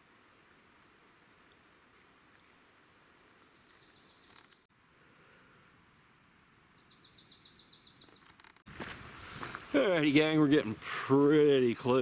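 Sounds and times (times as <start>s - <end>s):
faint outdoor hiss: 0.0s - 12.0s
songbird trilling: 3.4s - 4.6s, 6.7s - 8.2s.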